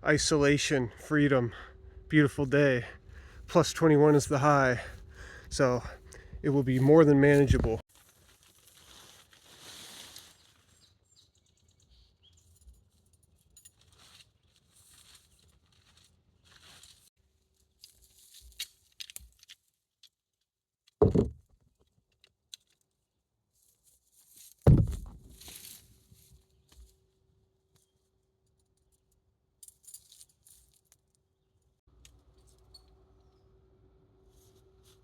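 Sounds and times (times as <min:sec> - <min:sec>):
loud short thumps: 0:21.0 - 0:21.4, 0:24.7 - 0:25.3.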